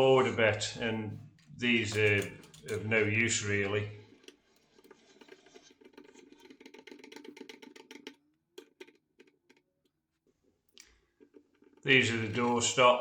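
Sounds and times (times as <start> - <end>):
faint rapid clicking: 0.5 - 9.6.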